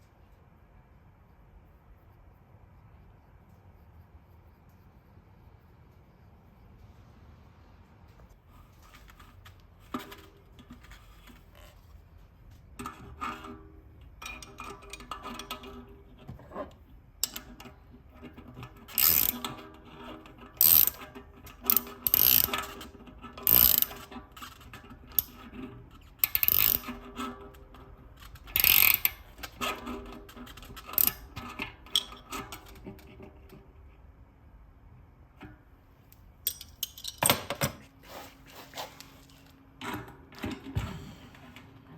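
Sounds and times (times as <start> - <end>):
metal tools clicking and clinking: 28.3 - 29.6, 36.4 - 37.7.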